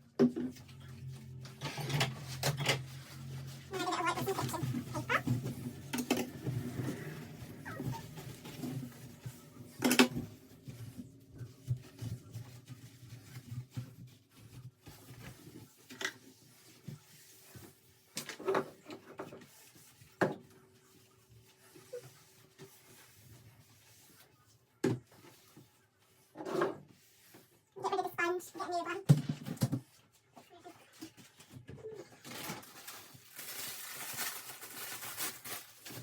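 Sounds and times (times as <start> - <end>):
kitchen items knocking and clattering: 0.0 - 15.0
cupboard or drawer sounds: 0.1 - 20.5, 26.3 - 27.3.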